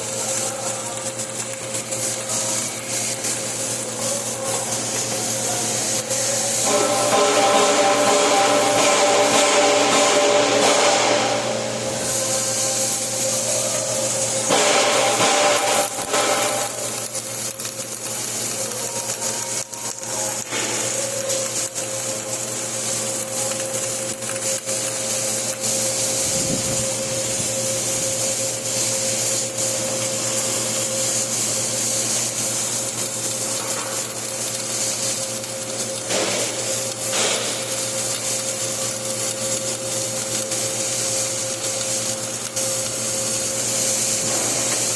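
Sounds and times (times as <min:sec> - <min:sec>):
welding arc crackling hiss: 0:00.0 - 0:44.9
welding machine hum: 0:00.0 - 0:44.9.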